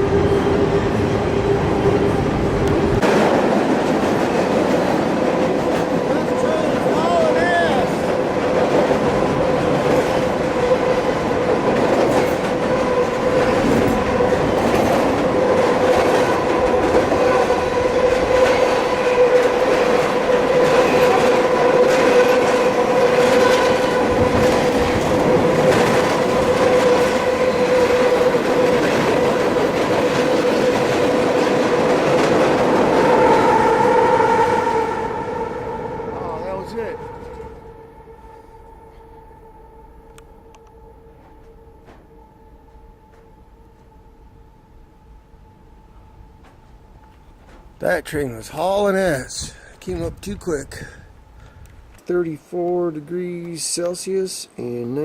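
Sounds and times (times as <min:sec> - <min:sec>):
train passing at speed: 0:00.0 - 0:54.6
steady high tone: 0:32.8 - 0:49.4.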